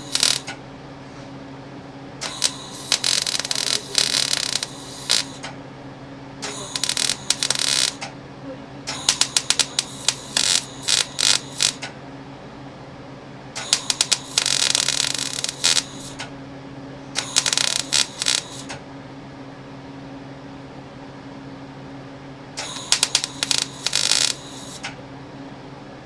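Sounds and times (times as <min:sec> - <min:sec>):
socket ratchet clicking: 0:08.9 - 0:11.8, 0:22.7 - 0:24.4.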